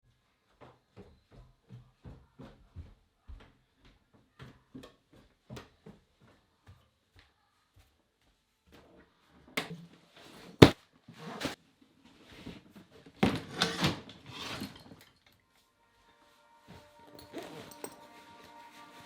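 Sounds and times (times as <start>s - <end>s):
handling knocks and clunks: 10.4s - 10.8s.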